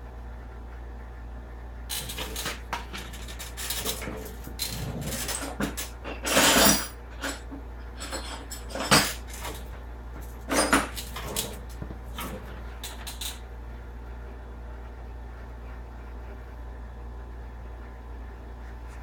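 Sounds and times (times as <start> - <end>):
hand tools clanking on metal: 1.9 - 13.4.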